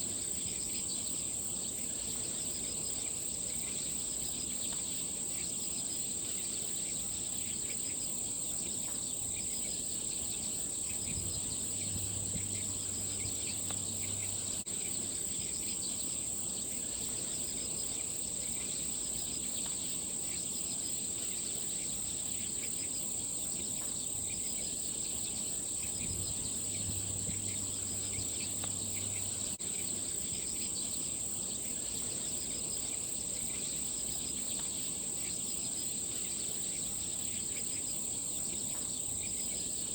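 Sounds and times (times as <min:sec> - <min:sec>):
crickets trilling: 0:00.0 - 0:39.9
faint low hum: 0:09.2 - 0:19.8, 0:24.2 - 0:34.7.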